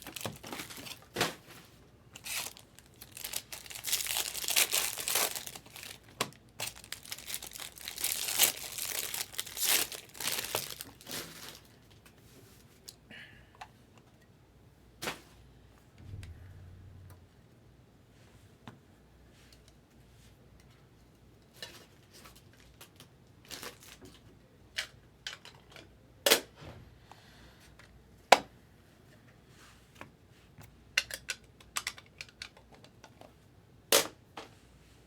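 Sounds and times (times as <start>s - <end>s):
packaging rustling and tearing: 0.0s - 1.5s, 2.2s - 11.9s.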